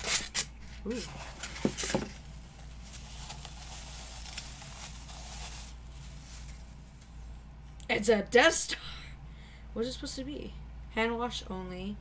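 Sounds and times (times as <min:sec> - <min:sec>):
packaging rustling and crinkling: 0:00.0 - 0:07.0.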